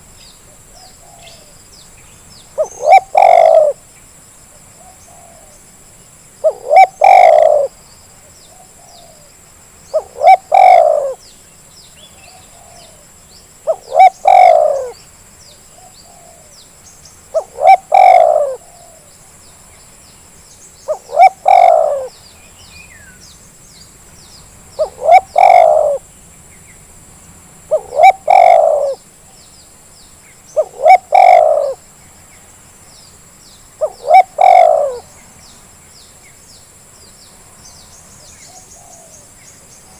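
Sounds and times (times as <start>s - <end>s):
small birds chirping: 0.0s - 4.0s, 6.5s - 26.9s, 27.7s - 39.9s
dove cooing: 2.6s - 3.8s, 6.4s - 7.8s, 9.9s - 11.2s, 13.6s - 15.0s, 17.3s - 19.1s, 20.9s - 22.1s, 24.8s - 26.1s, 27.7s - 29.0s, 30.6s - 31.8s, 33.8s - 35.1s, 38.5s - 39.2s.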